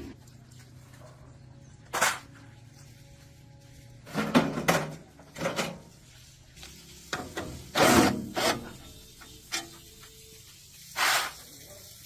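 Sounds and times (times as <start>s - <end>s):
scraping and rubbing strokes: 11.0s - 11.4s.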